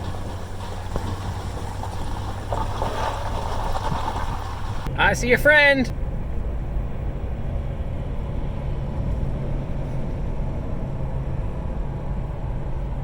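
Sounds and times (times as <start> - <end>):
car engine running: 0.0 - 5.9.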